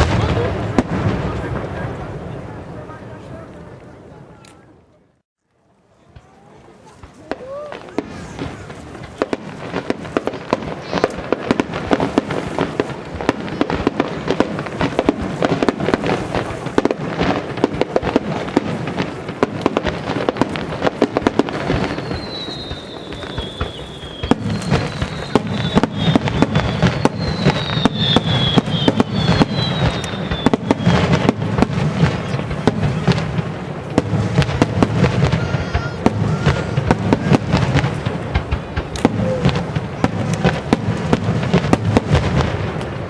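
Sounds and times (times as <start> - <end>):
fireworks bursting and crackling: 0.0 - 4.8, 5.6 - 43.0
firework whistles: 17.7 - 33.2.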